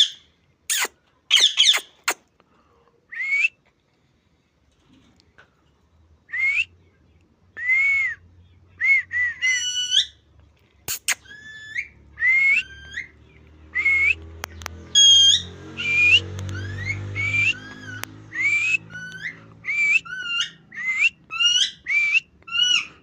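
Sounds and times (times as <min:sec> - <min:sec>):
bird squawking: 0:00.0 - 0:02.2, 0:10.9 - 0:13.2, 0:14.9 - 0:23.0
faint low hum: 0:00.2 - 0:14.8
bird whistling: 0:08.8 - 0:10.2, 0:10.9 - 0:23.0.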